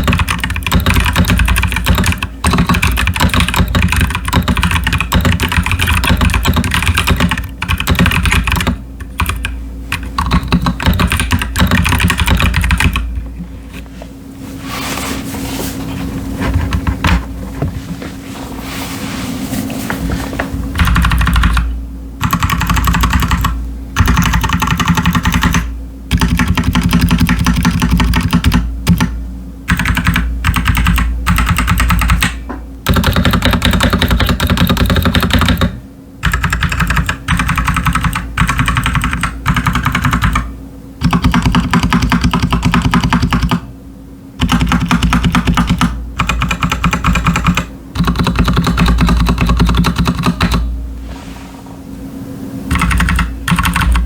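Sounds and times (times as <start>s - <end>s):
mechanical keyboard typing: 0.0s - 13.2s, 20.8s - 29.1s, 29.7s - 43.6s, 44.4s - 50.7s, 52.7s - 54.0s.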